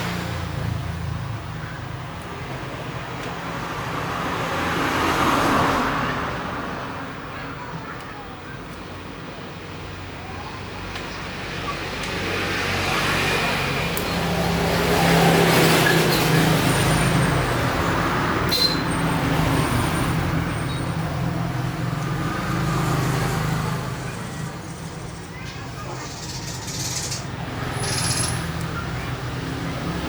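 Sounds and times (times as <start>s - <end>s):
vehicle passing by: 12.2s - 30.0s.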